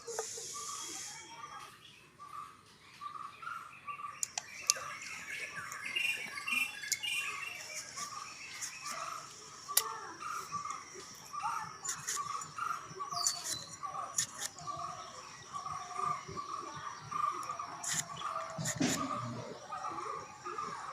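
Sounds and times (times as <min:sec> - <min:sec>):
birds chirping: 0:00.0 - 0:20.9
sharp clicks: 0:04.2 - 0:05.9, 0:13.2 - 0:14.8.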